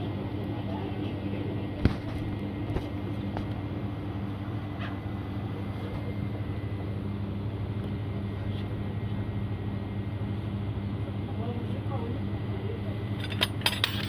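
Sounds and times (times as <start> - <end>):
low mechanical hum: 0.0 - 14.0.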